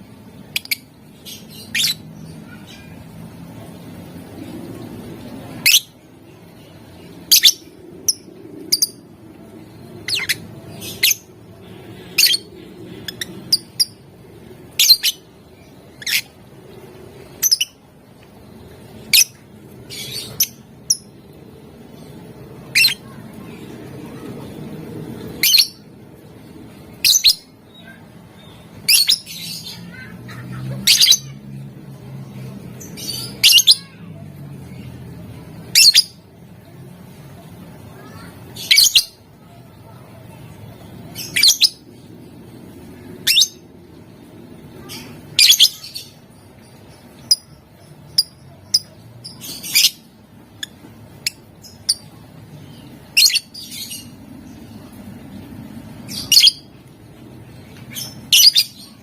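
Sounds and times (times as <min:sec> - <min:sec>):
low background murmur: 0:00.0 - 0:59.0.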